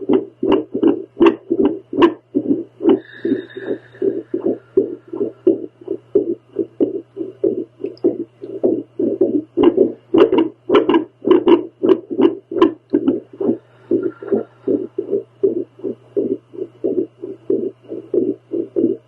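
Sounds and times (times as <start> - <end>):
heartbeat whooshing pulses: 0.0 - 19.0
low device hum: 0.0 - 19.0.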